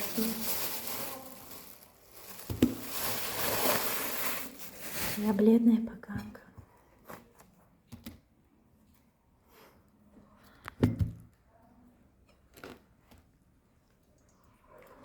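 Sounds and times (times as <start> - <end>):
knocks and thumps handling objects: 2.5 - 3.0.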